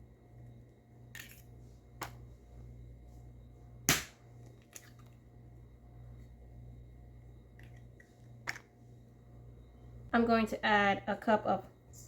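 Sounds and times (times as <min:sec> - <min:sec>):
eggs cracked on bowl edge: 0:03.9 - 0:05.1.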